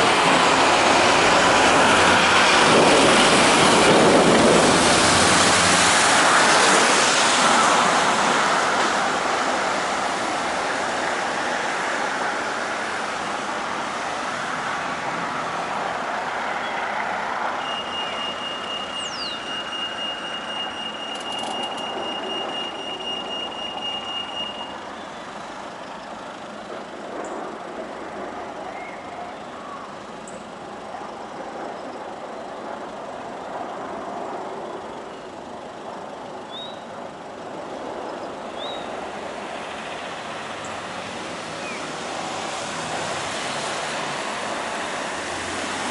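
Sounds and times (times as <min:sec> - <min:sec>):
passing road traffic: 0:00.0 - 0:45.9
pedestrian crossing beeping: 0:17.5 - 0:26.3.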